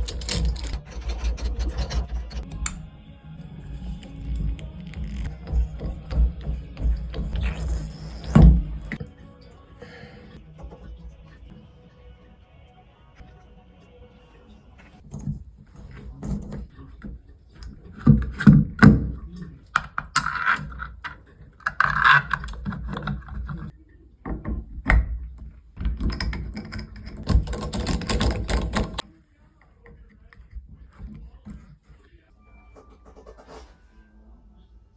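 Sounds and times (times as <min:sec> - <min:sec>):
tools and metal parts clattering: 0:00.0 - 0:02.6.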